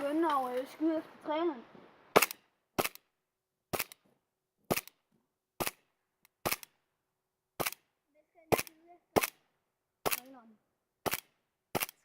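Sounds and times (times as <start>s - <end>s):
airsoft pistol shots: 2.2s - 3.0s, 4.7s - 5.0s, 5.6s - 6.7s, 7.6s - 7.8s, 8.6s - 9.4s, 11.0s - 12.0s.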